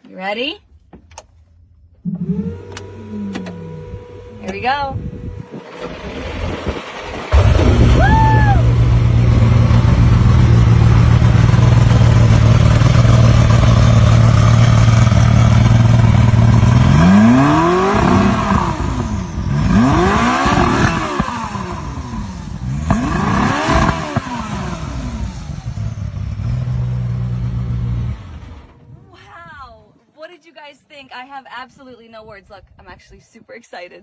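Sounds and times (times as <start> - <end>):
car engine idling and revving: 1.9 - 28.8.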